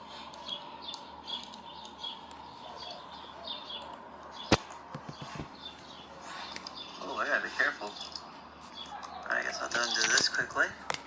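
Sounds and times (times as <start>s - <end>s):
small birds chirping: 0.0s - 11.0s.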